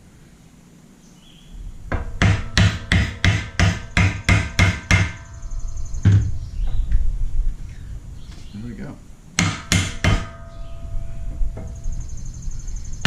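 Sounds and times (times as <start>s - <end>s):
hammer blows with metallic ring: 9.4s - 11.4s.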